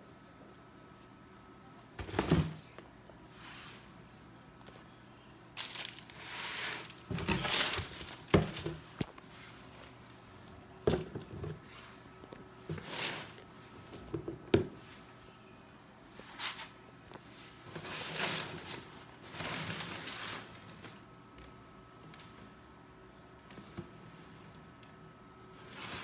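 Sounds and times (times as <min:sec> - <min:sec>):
packaging wrap crinkling: 0:05.6 - 0:09.2.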